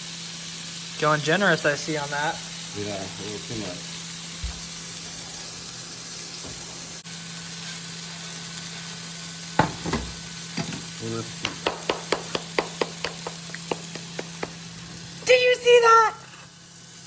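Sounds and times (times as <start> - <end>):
burger patties sizzling: 0.0 - 17.0
quick regular taps: 11.4 - 14.7.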